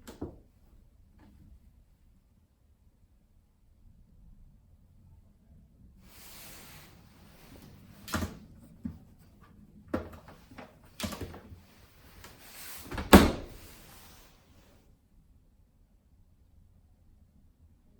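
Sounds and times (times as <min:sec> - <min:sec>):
dishwasher racks sliding: 0:06.1 - 0:08.6, 0:10.0 - 0:14.3
dishwasher clunks: 0:07.2 - 0:08.5, 0:09.9 - 0:14.0.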